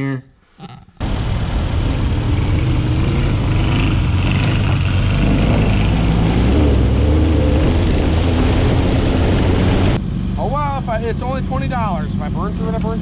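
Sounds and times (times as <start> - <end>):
dune buggy engine rumbling: 0.0 - 13.0
rushing noise: 0.6 - 10.0.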